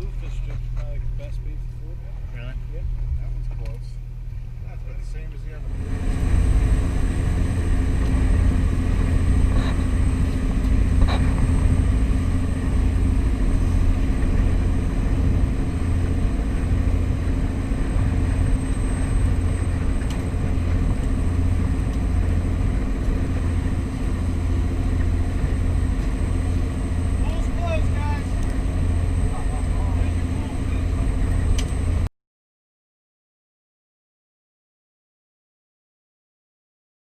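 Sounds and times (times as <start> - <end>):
boat engine droning: 0.0 - 32.1.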